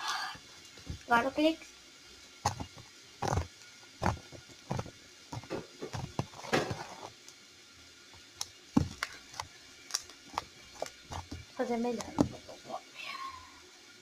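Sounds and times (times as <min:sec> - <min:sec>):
slime squelching by hand: 0:02.4 - 0:07.1.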